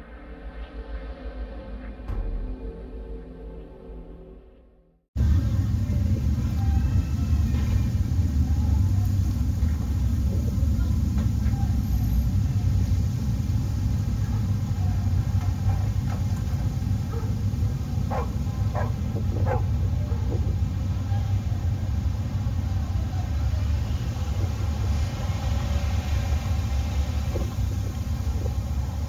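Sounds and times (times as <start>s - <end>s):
loud low rumble: 5.2s - 29.0s
dogs barking: 15.3s - 20.8s.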